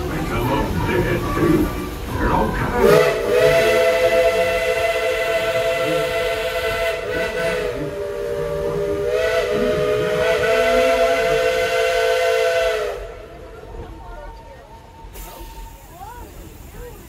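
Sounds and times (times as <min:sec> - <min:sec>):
steam locomotive whistle: 0:02.8 - 0:13.4.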